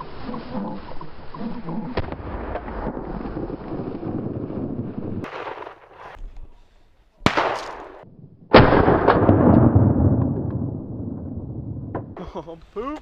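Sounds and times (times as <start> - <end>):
shotgun shot: 5.2 - 6.2, 7.2 - 10.1.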